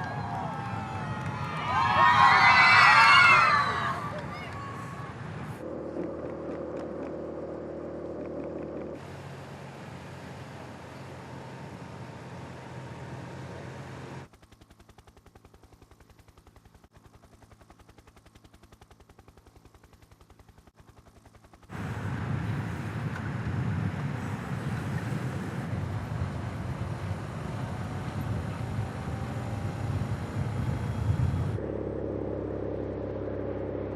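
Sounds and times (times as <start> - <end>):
race car engines rumbling: 0.0 - 14.3, 21.7 - 33.9.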